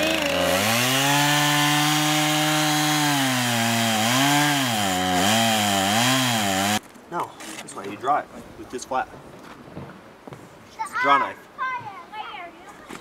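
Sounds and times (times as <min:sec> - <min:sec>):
chainsaw running at high revs: 0:00.0 - 0:06.8.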